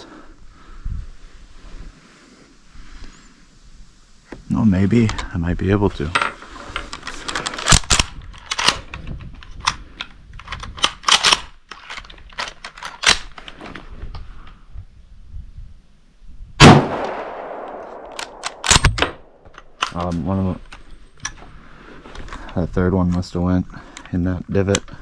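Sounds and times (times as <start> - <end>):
rifle bolt clacks: 6.9 - 13.4, 17.0 - 21.4
metallic rifle clicking: 6.9 - 13.5, 17.0 - 21.4
rifle shot with echo: 16.6 - 19.3.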